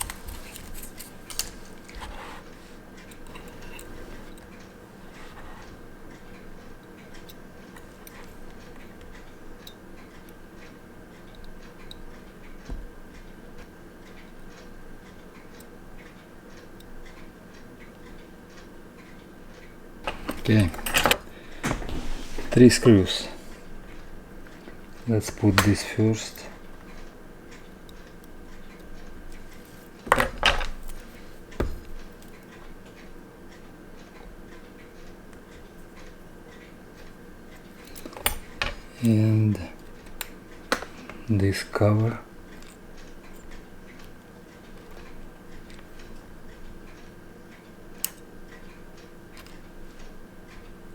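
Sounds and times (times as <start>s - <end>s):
faint steady hum: 0.0s - 50.9s
metal tools clinking on surface: 20.1s - 23.3s.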